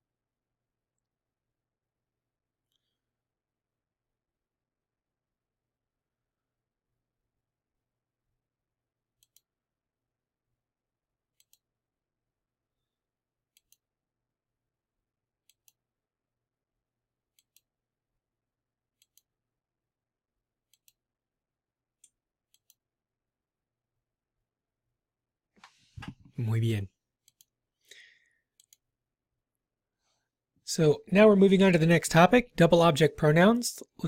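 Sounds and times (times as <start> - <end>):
computer mouse clicks: 2.6 - 3.0, 9.2 - 9.5, 11.3 - 11.7, 13.5 - 13.9, 15.4 - 15.8, 17.3 - 17.7, 18.9 - 19.3, 20.6 - 21.0, 22.0 - 22.8, 27.2 - 27.6, 28.5 - 28.9.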